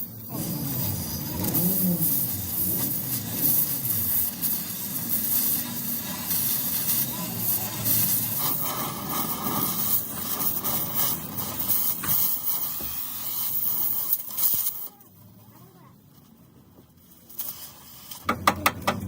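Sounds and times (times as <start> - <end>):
loud hissing gusts: 0.0 - 14.9
voices murmuring: 6.9 - 8.0.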